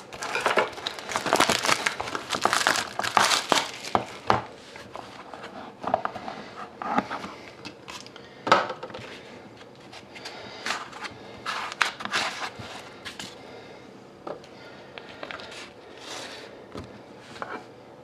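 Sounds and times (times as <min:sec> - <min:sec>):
packaging crinkling: 0:00.0 - 0:04.6.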